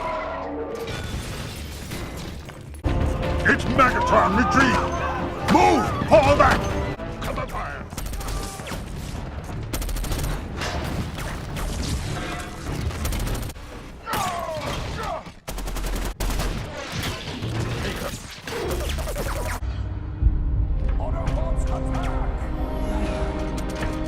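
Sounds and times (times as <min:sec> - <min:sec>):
rapid gunfire: 0:07.9 - 0:13.6, 0:15.4 - 0:19.6.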